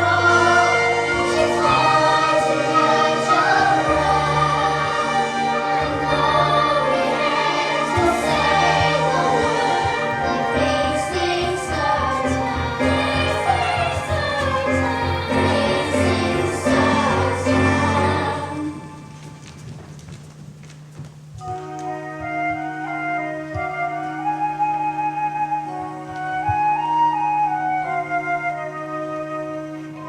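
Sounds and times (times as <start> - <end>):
chorus singing: 0.0 - 19.5
instrumental accompaniment: 0.0 - 30.0.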